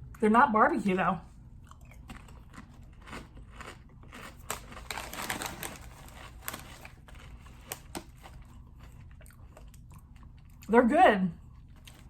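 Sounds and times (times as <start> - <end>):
crunching potato chips: 1.6 - 10.7.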